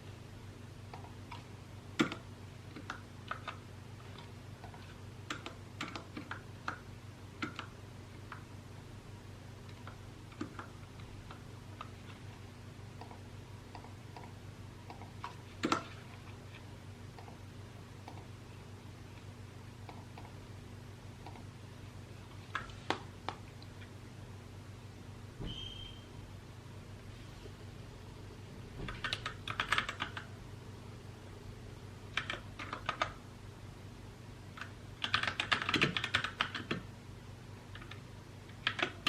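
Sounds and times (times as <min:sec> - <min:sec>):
steady low hum: 0:00.0 - 0:39.0
mechanical keyboard typing: 0:01.0 - 0:06.8, 0:28.9 - 0:30.3, 0:32.1 - 0:33.2, 0:34.6 - 0:36.8, 0:37.8 - 0:39.0.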